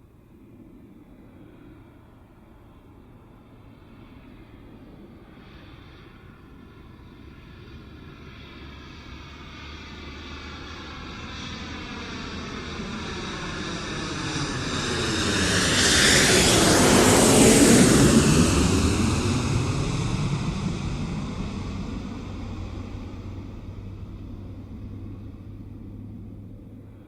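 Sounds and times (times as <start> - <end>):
jet aircraft flying overhead: 0.1 - 27.0.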